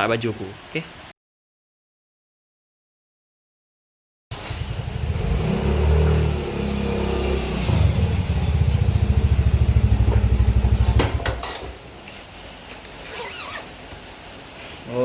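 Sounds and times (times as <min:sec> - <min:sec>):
motorcycle engine chugging: 0:07.6 - 0:11.3.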